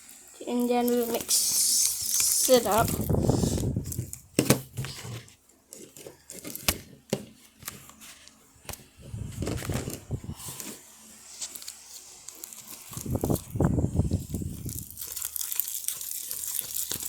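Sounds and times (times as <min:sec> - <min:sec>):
sticky slime crackles and clicks: 0:14.6 - 0:17.0.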